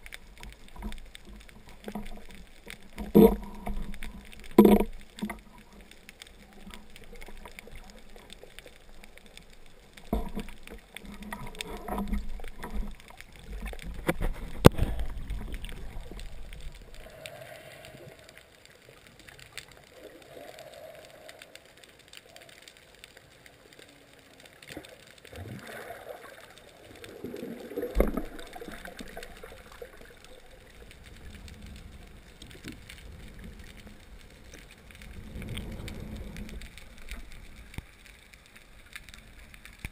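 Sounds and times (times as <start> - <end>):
water sloshing and gurgling: 0.0 - 23.5, 24.6 - 39.9
sharp knocks underwater: 4.5 - 5.4, 13.9 - 16.2.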